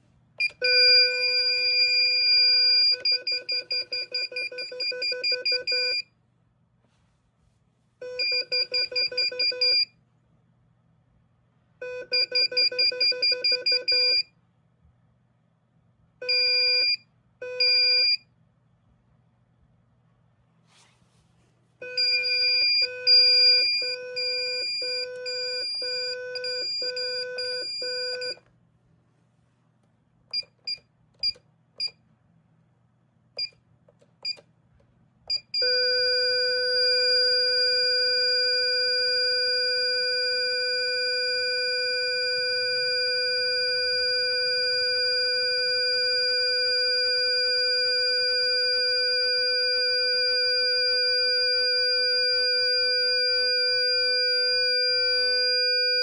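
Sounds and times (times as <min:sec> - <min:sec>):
intruder alarm beeping: 0:00.4 - 0:06.0, 0:08.0 - 0:09.9, 0:11.9 - 0:14.3, 0:16.2 - 0:18.2, 0:21.8 - 0:28.4.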